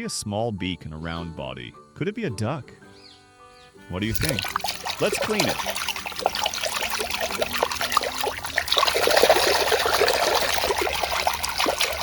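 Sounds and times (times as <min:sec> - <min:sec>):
water splashing over plastic toy: 0:04.0 - 0:12.0.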